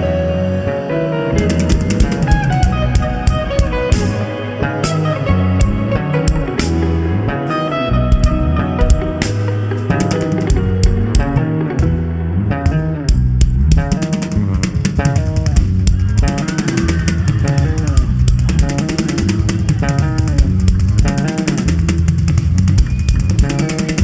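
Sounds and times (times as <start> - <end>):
bass guitar: 0.0 - 24.0
repeated guitar notes: 0.0 - 24.0
drum kit beat: 1.4 - 24.0.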